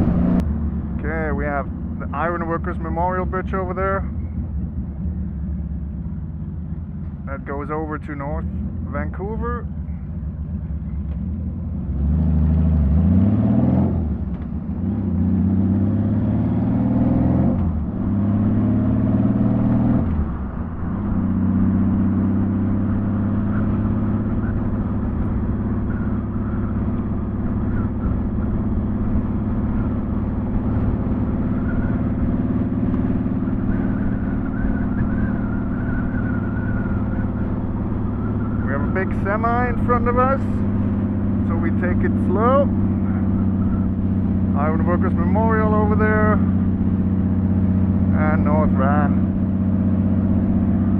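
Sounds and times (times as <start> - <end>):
motorcycle engine revving: 10.7 - 50.9.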